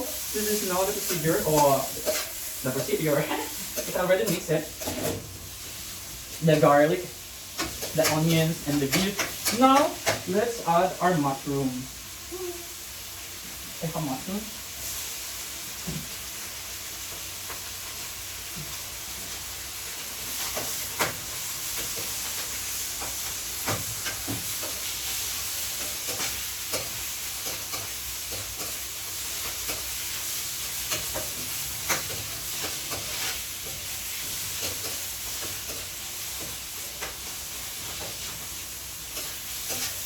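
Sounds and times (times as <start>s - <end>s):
food sizzling in a pan: 0.0s - 40.0s
spatula scraping a pan: 0.3s - 5.9s, 18.8s - 40.0s.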